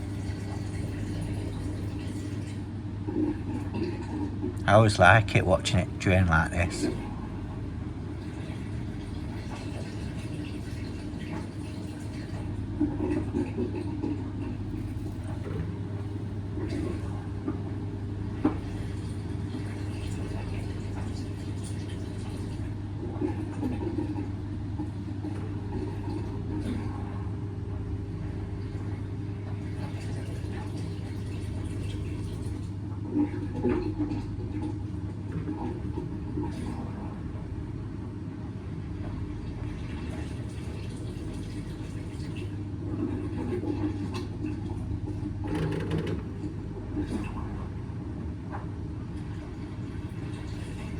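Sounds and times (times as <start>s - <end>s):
water gurgling: 0.0s - 37.7s
washing machine drain pump: 0.0s - 50.9s.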